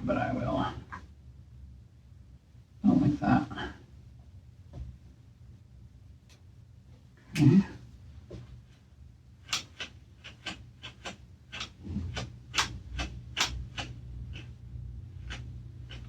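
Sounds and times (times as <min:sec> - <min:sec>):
low steady hum: 0:00.0 - 0:16.0
small parts clicking and scraping: 0:09.4 - 0:14.6.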